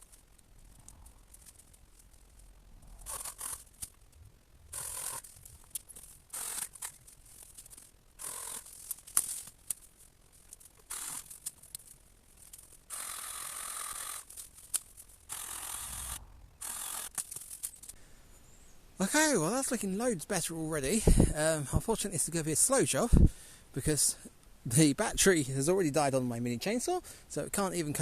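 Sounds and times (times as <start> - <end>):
mini chainsaw cutting branches: 3.0 - 3.9, 4.7 - 7.0, 8.2 - 9.4, 10.8 - 11.6, 12.8 - 17.9.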